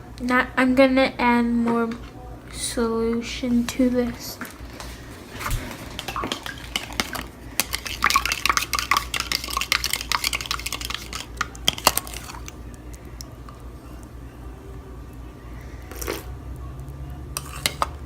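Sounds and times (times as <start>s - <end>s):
utensil stirring in bowl: 3.6s - 14.1s, 17.3s - 18.0s.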